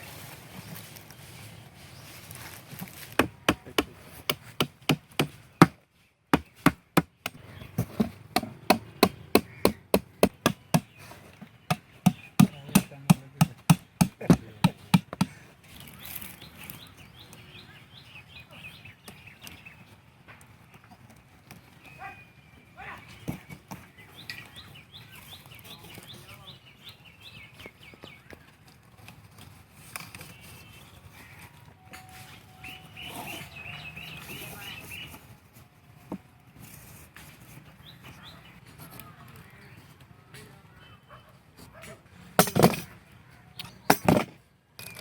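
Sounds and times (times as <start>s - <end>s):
chopping strikes on wood: 3.1s - 5.8s, 6.4s - 10.9s, 11.7s - 15.4s.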